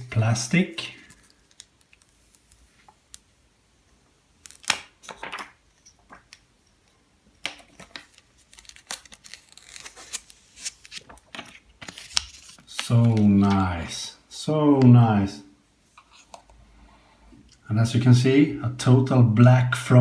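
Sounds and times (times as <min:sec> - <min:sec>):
plastic film peeling and crackling: 0:00.2 - 0:03.3, 0:04.4 - 0:06.4, 0:07.4 - 0:13.9.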